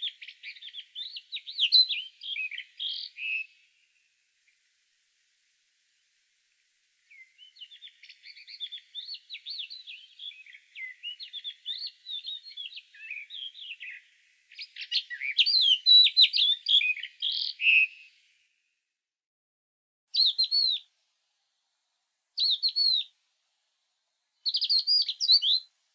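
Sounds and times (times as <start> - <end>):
songbird warbling: 20.2 - 20.8, 22.4 - 23.1, 24.4 - 25.7.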